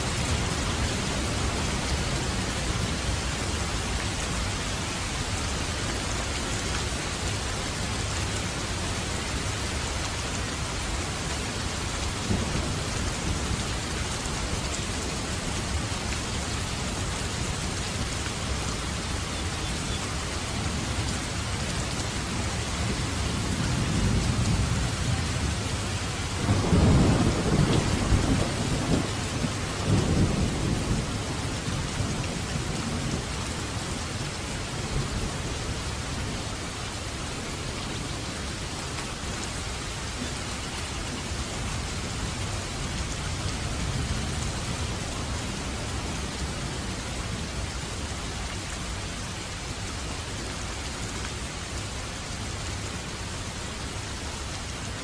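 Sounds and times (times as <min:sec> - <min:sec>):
steady rain: 0:00.0 - 0:55.0
thunder rumbling: 0:12.0 - 0:15.9, 0:22.2 - 0:33.3.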